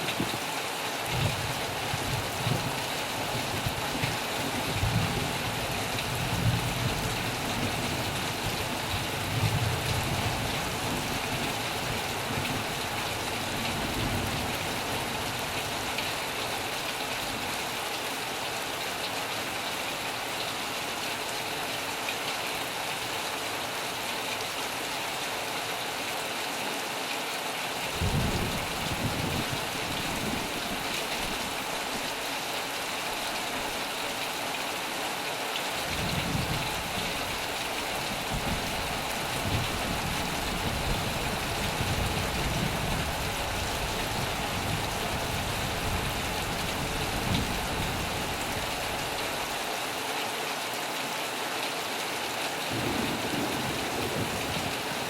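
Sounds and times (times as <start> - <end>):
heavy rain on a metal roof: 0.0 - 55.0
thunder rumbling: 27.9 - 30.9, 52.7 - 55.0.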